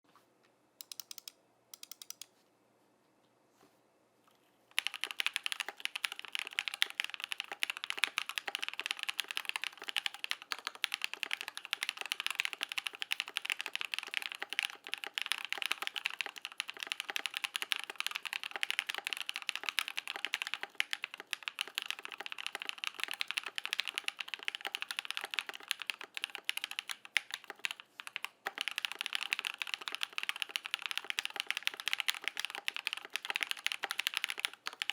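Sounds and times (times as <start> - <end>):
fast typing on mechanical keyboard: 0.8 - 2.2, 4.8 - 34.9.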